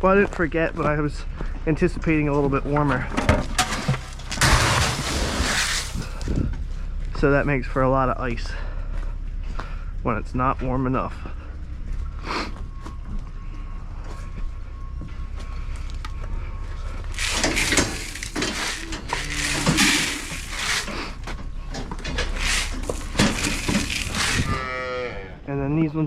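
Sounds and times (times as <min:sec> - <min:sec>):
ice scraped and knocked from buckets: 0:03.2 - 0:06.3, 0:17.1 - 0:21.2, 0:22.0 - 0:24.7
low rumble: 0:04.0 - 0:25.8.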